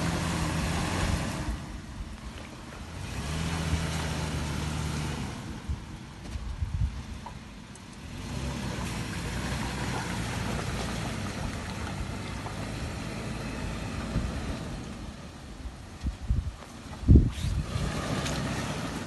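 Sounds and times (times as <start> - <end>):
car engine running under load: 0.0 - 19.0.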